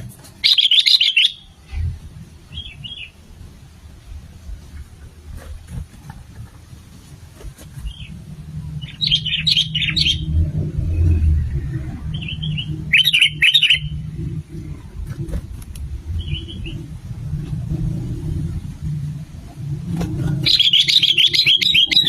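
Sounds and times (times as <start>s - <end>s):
bird chattering calls: 0.4s - 1.5s, 8.8s - 10.4s, 12.1s - 14.0s, 20.4s - 22.0s
steady low rumble: 1.3s - 22.0s.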